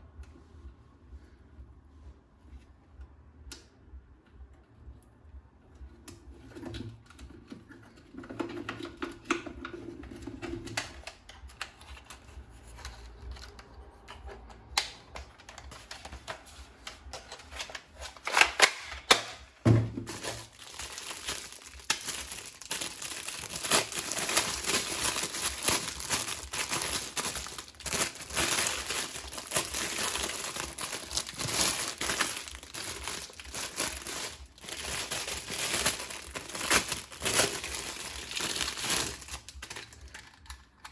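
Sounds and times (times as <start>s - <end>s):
packaging clicks and knocks: 12.8s - 40.9s
wrapping crinkling: 20.0s - 40.9s.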